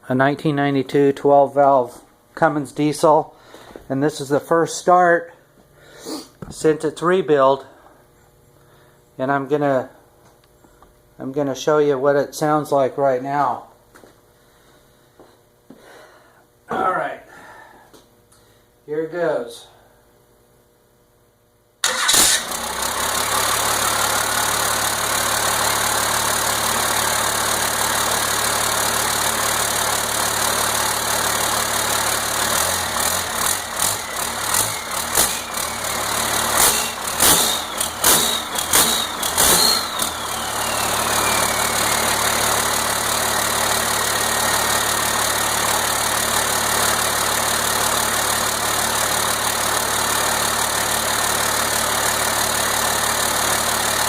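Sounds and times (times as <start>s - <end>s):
diesel engine starting and revving: 21.8s - 54.0s
turbo whistle winding down: 32.6s - 43.3s.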